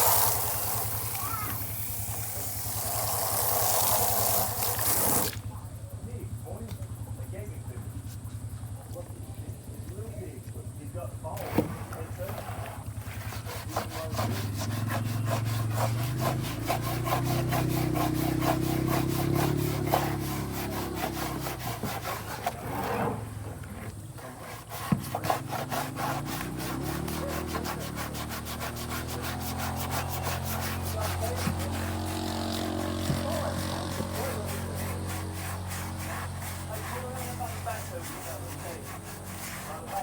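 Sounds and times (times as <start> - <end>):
fast rasping rattle: 0.0 - 5.3, 12.9 - 23.4, 24.0 - 40.0
vehicle engine running: 5.3 - 24.2, 25.1 - 40.0.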